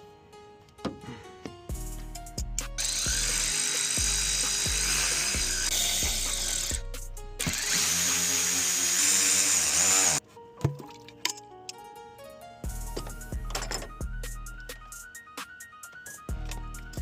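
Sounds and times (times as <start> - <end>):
background music: 0.0 - 17.0
power tool running: 2.8 - 10.2.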